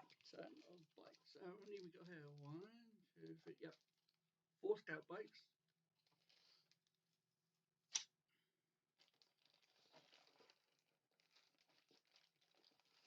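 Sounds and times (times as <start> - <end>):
plastic packaging crinkling: 0.0 - 3.9, 9.0 - 13.0.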